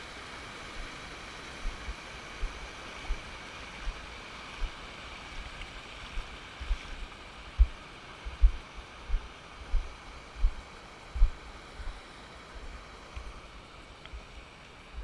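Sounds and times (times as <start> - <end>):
waterfall rushing hiss: 0.0 - 15.0
low dull thumps: 7.6 - 10.6, 11.2 - 12.0.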